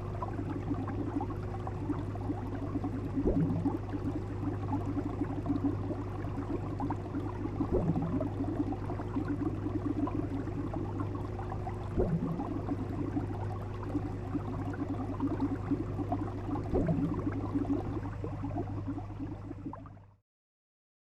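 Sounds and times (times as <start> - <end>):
low pump hum: 0.0 - 20.2
water bubbling and gurgling: 0.0 - 20.2.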